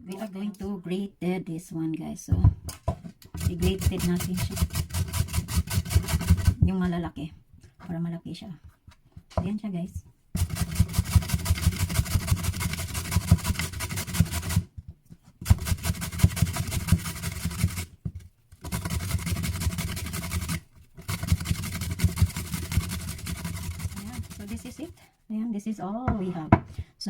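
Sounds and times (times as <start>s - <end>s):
sweet potato scraping on grater: 3.4s - 6.6s, 10.4s - 14.7s, 15.4s - 25.1s.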